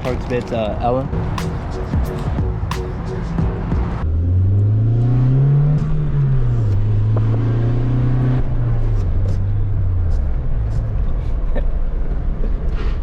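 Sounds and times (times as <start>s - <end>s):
car engine revving: 0.0s - 11.0s.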